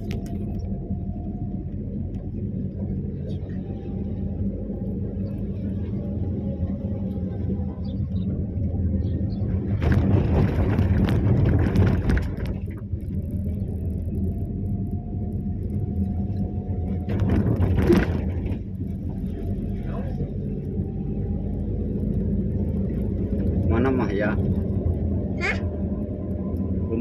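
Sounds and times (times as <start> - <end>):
vehicle engine idling: 0.0 - 10.3.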